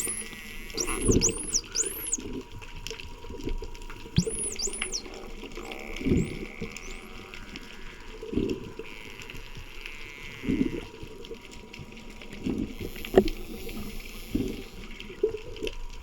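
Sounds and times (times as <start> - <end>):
underwater regulator bubbles: 4.2 - 7.2.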